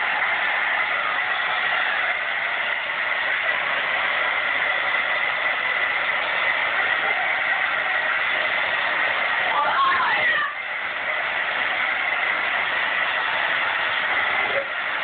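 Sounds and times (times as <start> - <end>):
hair dryer running: 0.0 - 15.0.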